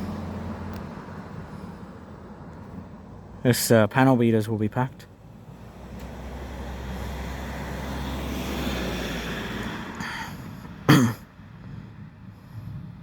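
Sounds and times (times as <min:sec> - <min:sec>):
car driving past: 0:05.4 - 0:10.0.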